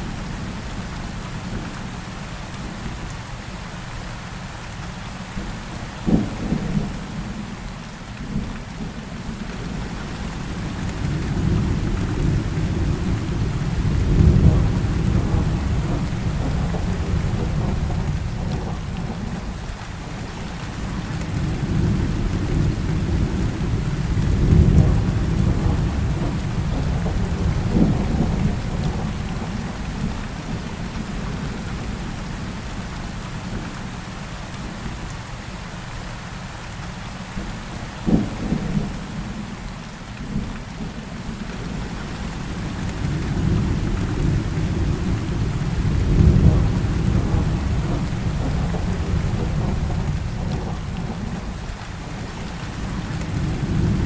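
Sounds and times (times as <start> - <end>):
heavy rain falling: 0.0 - 54.0
thunder rolling: 11.0 - 19.4, 20.9 - 30.0, 42.6 - 51.6
sharp cracks of thunder: 42.6 - 51.6.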